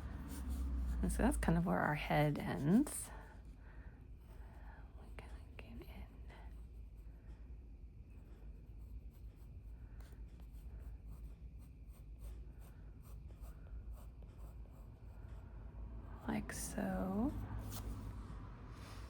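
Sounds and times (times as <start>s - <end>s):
pencil sketching on paper: 0.0s - 3.0s, 8.2s - 15.7s.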